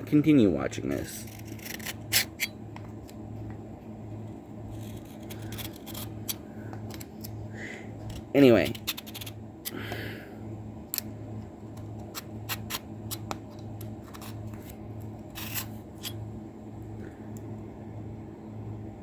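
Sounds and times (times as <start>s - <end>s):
blade scraping on sharpener: 0.9s - 2.6s, 4.7s - 6.4s, 8.6s - 9.4s, 14.0s - 16.2s.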